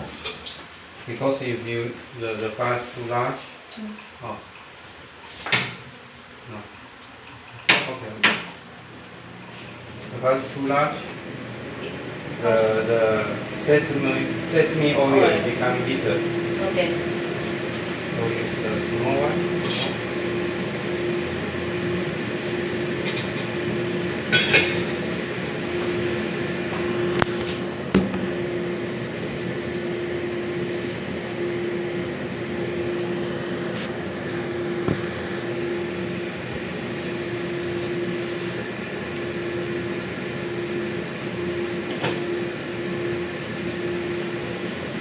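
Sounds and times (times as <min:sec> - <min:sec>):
food frying in oil: 0:00.0 - 0:10.8.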